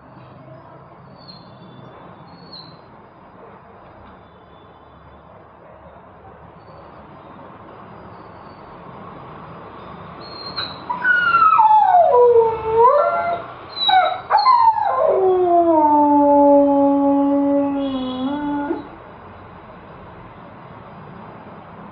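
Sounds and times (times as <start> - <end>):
dog yipping: 10.2 - 15.2
husky howling: 10.2 - 19.0.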